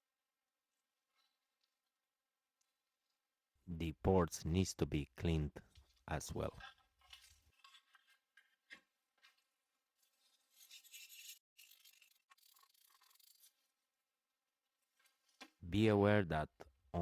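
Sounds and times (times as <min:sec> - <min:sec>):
faint rubbing and scrubbing: 0:05.7 - 0:13.7.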